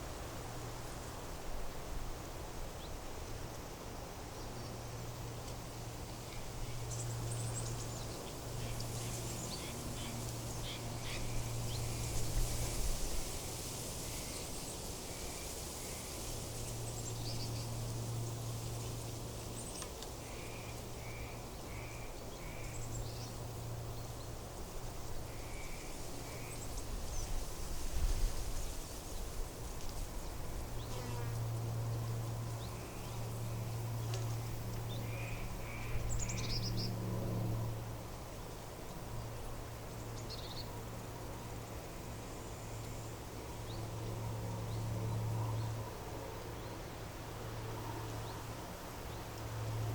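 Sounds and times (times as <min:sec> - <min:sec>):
soft steady hiss: 0:00.0 - 0:49.9
low insect buzz: 0:06.1 - 0:38.0.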